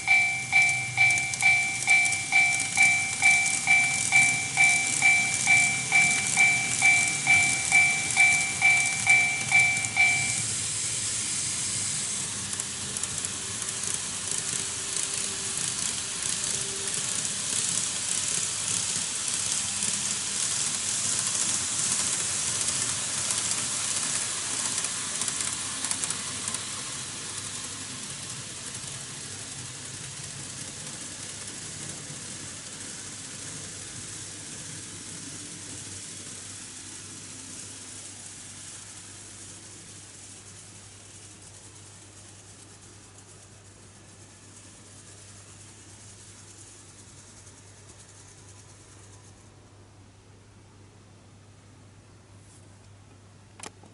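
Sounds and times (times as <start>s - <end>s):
crossing warning bell ding: 0.0s - 10.5s
model train rattling on track: 0.0s - 49.4s.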